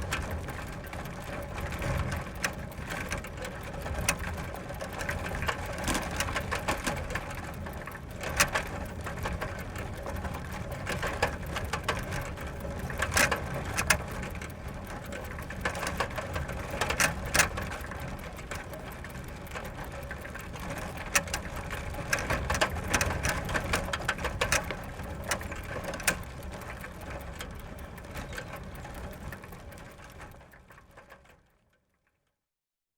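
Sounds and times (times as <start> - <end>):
bicycle clicks and rattles: 0.0 - 32.2.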